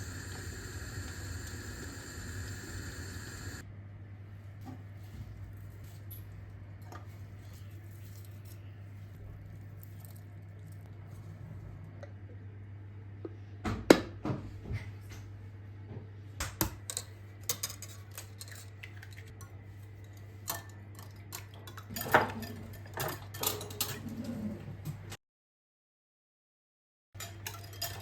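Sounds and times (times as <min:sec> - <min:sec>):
low steady hum: 0:00.0 - 0:13.6
cutlery clinking against crockery: 0:16.6 - 0:24.4, 0:27.2 - 0:28.0.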